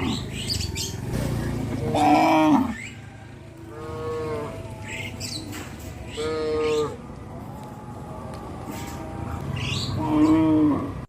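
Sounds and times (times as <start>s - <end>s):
cattle mooing: 1.8s - 2.8s, 3.7s - 4.8s, 6.1s - 7.0s, 10.0s - 11.0s.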